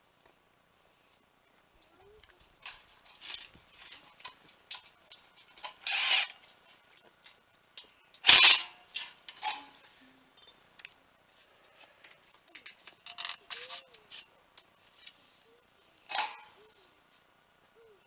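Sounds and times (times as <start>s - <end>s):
metal parts clinking: 5.6s - 6.3s, 8.2s - 9.7s
metal scrape: 5.6s - 6.3s, 8.2s - 9.7s.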